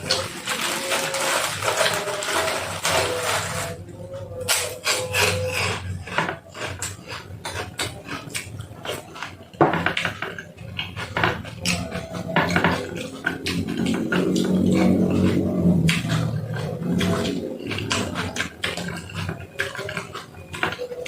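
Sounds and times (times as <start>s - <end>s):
person eating mouth sounds: 4.0s - 9.6s, 10.2s - 21.0s.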